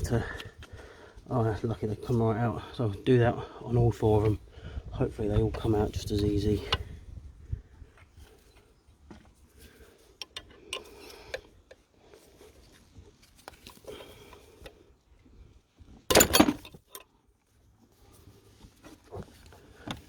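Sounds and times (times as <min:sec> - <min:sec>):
metal hand tools clinking: 0:16.1 - 0:17.0.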